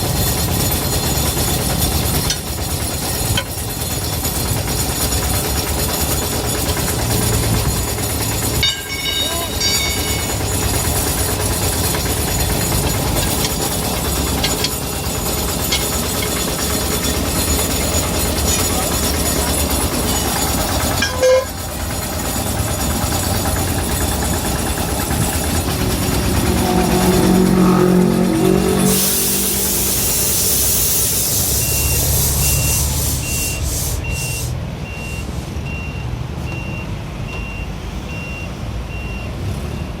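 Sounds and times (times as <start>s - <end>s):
vehicle engine rumble: 0.0s - 40.0s
reversing alarm beeping: 7.3s - 21.7s, 22.4s - 40.0s
loud rushing noise: 23.1s - 34.7s.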